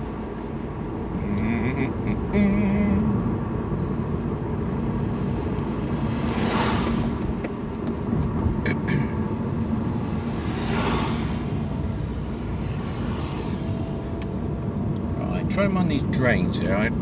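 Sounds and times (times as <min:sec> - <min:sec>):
road and engine rumble: 0:00.0 - 0:17.0
passing vehicle whoosh: 0:03.1 - 0:16.2.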